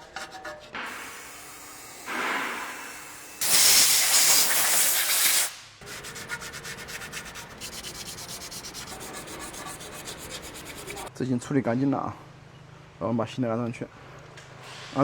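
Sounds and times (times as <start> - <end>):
loud steady hiss: 0.9 - 5.8
sanding rust by hand: 3.4 - 11.1.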